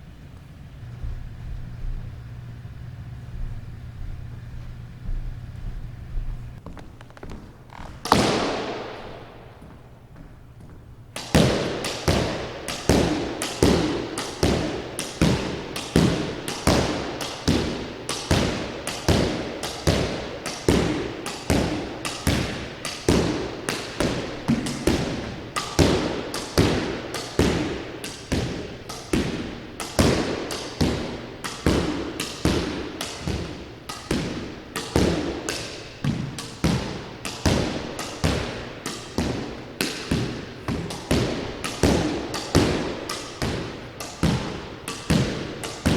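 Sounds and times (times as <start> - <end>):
squash ball hitting racket and walls: 6.6 - 45.9.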